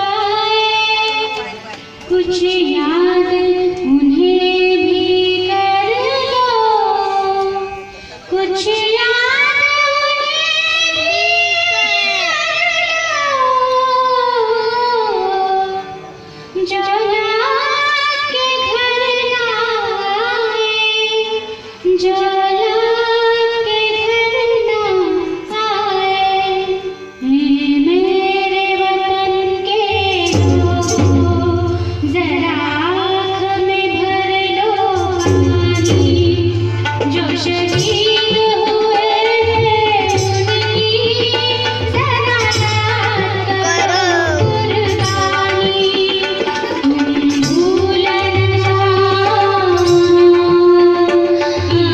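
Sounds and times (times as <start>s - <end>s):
girl singing: 37.5s - 51.9s.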